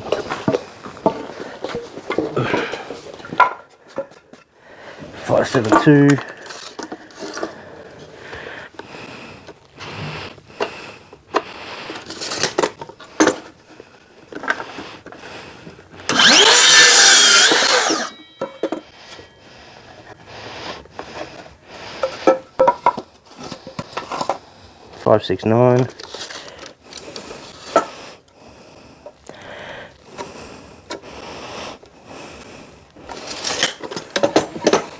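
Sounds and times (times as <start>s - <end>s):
power saw cutting timber: 16.1s - 19.2s.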